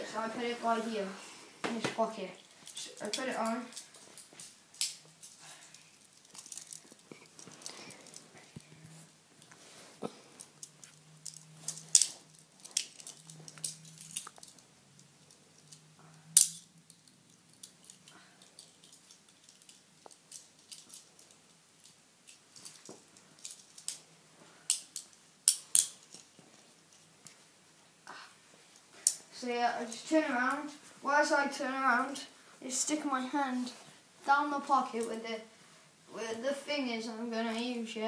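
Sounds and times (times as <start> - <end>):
metal handcuffs clinking: 2.6 - 8.3, 10.4 - 24.1, 24.7 - 27.1.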